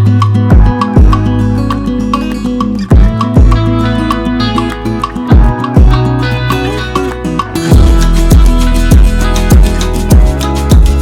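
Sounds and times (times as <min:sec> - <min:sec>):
plucked guitar notes: 0:00.0 - 0:11.0
steady bass: 0:00.0 - 0:11.0
deep drum beat: 0:00.5 - 0:01.2, 0:02.9 - 0:03.7, 0:05.3 - 0:06.0, 0:07.6 - 0:11.0.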